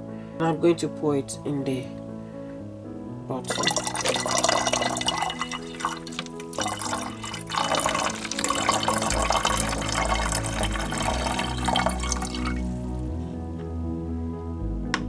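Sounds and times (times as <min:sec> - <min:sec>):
background music: 0:00.0 - 0:15.0
liquid pouring into bottle: 0:03.4 - 0:13.1.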